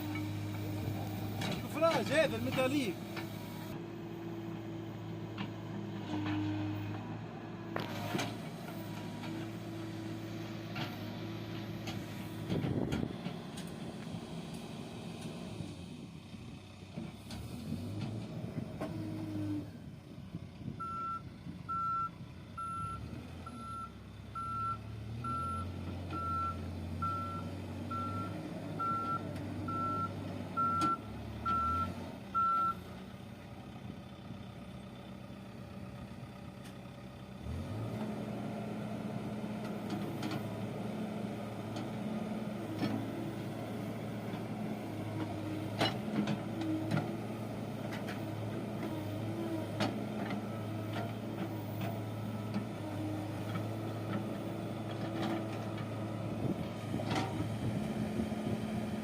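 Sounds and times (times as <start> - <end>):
reversing alarm beeping: 20.8 - 32.8.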